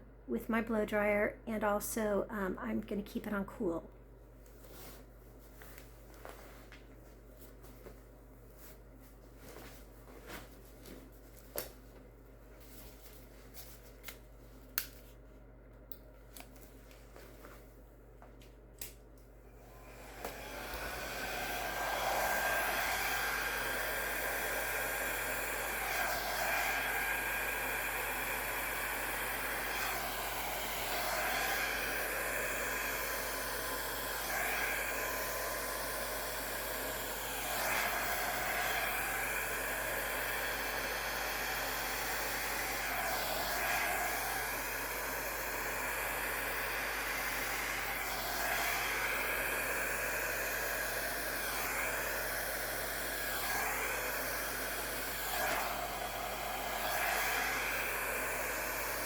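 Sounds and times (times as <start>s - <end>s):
hair dryer blowing air: 19.5s - 59.0s.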